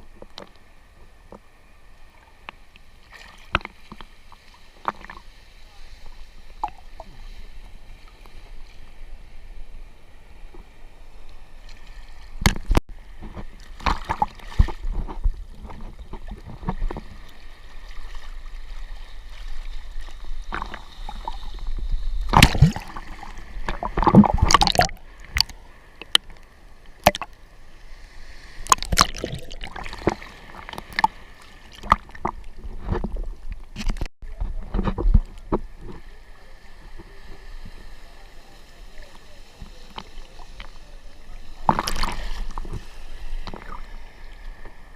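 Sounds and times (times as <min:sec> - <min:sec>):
seawater splashing and sloshing: 0:11.6 - 0:25.6, 0:27.0 - 0:33.4, 0:41.6 - 0:44.9.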